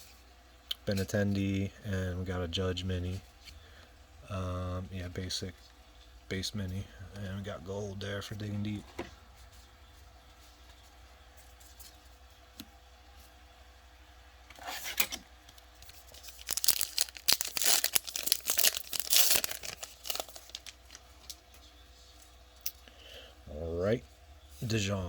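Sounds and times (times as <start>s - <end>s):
wrapper tearing and crinkling: 15.8s - 21.4s.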